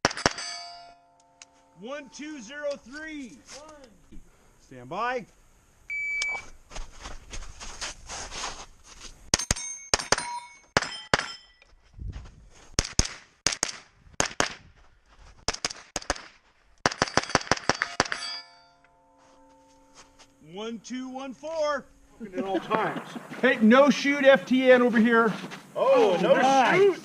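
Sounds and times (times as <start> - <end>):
steel targets clanging: 0.0 - 2.6, 9.3 - 11.7, 17.0 - 24.5
shot timer beep: 5.9 - 6.5
rifle shots: 12.8 - 14.6, 15.5 - 18.3.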